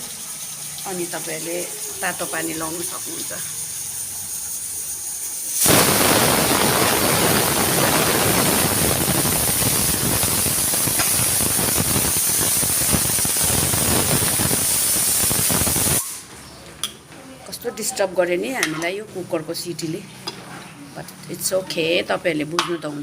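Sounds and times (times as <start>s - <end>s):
pressure cooker whistle hissing: 3.0s - 16.2s.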